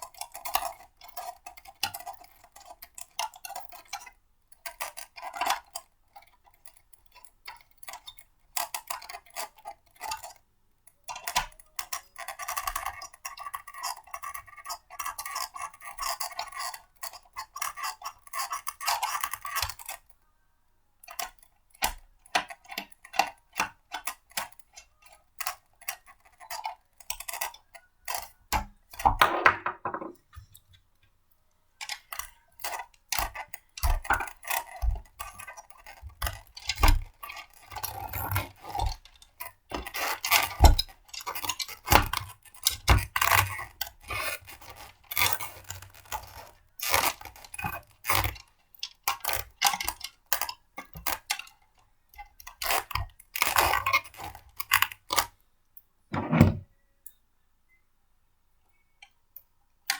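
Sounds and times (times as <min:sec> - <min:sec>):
blender parts clicking and clattering: 0:21.1 - 0:30.6, 0:31.8 - 0:51.5.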